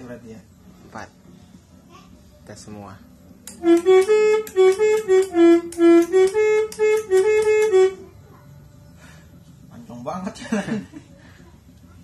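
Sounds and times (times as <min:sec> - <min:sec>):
musical horn playing a tune: 0:03.5 - 0:08.1.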